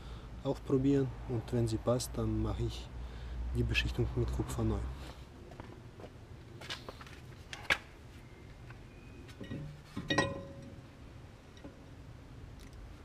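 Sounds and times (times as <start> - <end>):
metallic clank of brake disc: 9.3 - 10.8.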